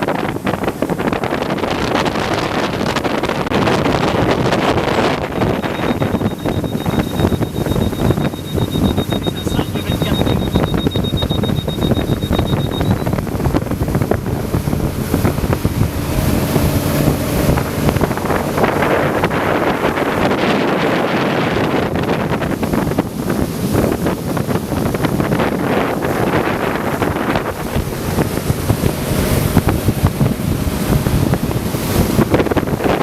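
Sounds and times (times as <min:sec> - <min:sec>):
water and boat noise: 0:00.0 - 0:33.0
wind buffeting microphone: 0:00.0 - 0:33.0
thin high steady tone: 0:05.4 - 0:13.2.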